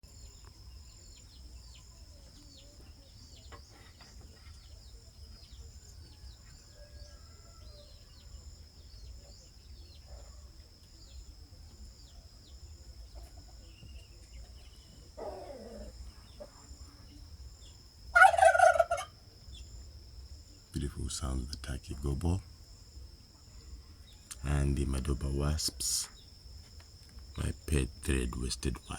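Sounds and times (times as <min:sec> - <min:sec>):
high insect trill: 0:00.0 - 0:28.9
lower animal call: 0:14.6 - 0:17.2
turkey gobbling: 0:18.1 - 0:19.2.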